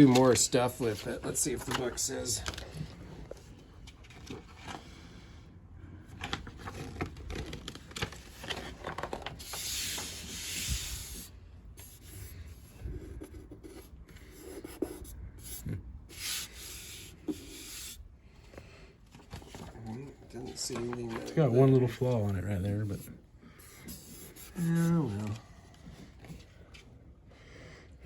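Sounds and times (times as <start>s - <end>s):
paper pages rustling: 0.0s - 4.9s, 6.1s - 18.0s, 19.1s - 26.8s
paper sliding swish: 9.4s - 12.3s.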